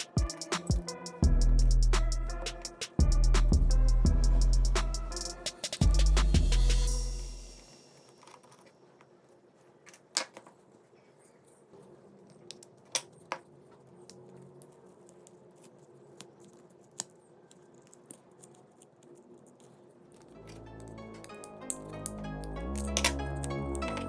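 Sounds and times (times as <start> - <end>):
small tools clicking and tapping: 12.3 - 24.0.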